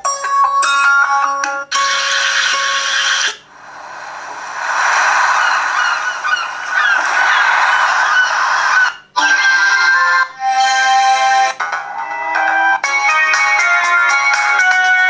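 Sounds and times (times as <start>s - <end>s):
wash of noise: 3.4s - 9.2s.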